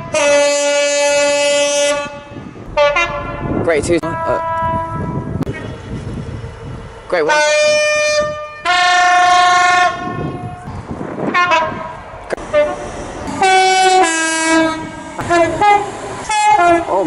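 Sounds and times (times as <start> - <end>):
train horn blasts: 0.0 - 5.4, 7.3 - 10.7, 11.3 - 16.9.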